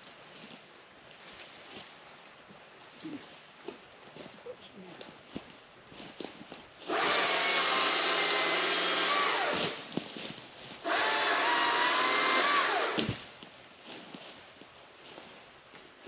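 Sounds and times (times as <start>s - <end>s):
battery chainsaw running: 6.9s - 9.8s, 10.8s - 13.2s.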